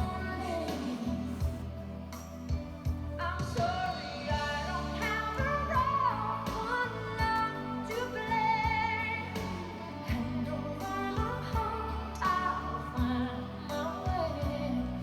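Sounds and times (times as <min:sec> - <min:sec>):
person singing with vibrato: 0:00.0 - 0:15.0.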